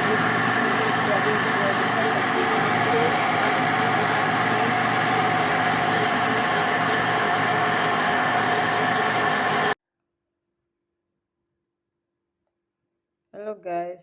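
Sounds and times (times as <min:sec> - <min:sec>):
blender motor running: 0:00.0 - 0:09.8.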